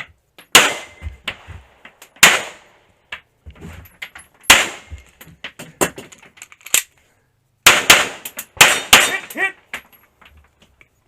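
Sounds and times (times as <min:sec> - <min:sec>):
pistol shots: 0:00.5 - 0:01.1, 0:02.2 - 0:02.7, 0:04.5 - 0:05.0, 0:07.6 - 0:09.4
small knocks and clicks: 0:09.7 - 0:11.0.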